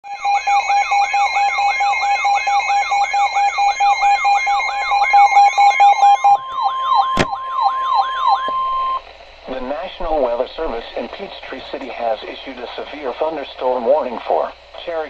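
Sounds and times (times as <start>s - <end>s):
steady high alarm tone: 0.0s - 10.7s
falling siren whoop: 0.1s - 9.0s.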